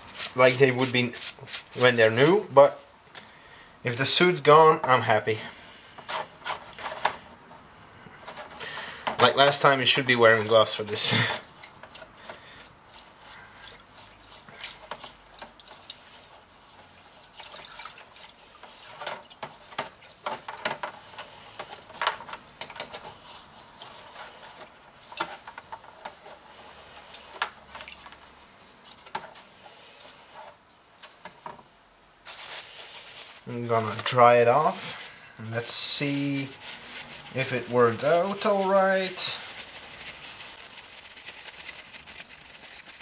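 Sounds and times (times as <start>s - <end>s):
brush scrubbing in liquid: 0.0s - 2.5s, 9.2s - 30.6s, 32.2s - 43.0s
liquid splashing and dripping: 12.9s - 16.3s, 16.9s - 20.2s.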